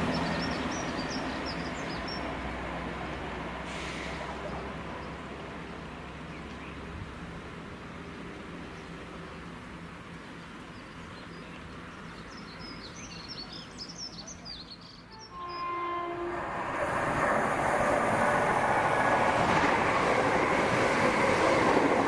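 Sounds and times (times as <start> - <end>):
small birds chirping: 0.0 - 2.4, 4.4 - 6.9, 7.9 - 15.8
train running through station: 0.0 - 22.0
train horn: 15.1 - 16.7.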